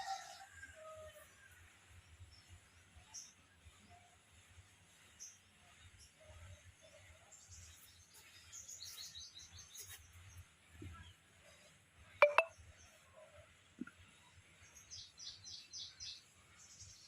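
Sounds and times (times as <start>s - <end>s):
small birds chirping: 4.9s - 11.2s.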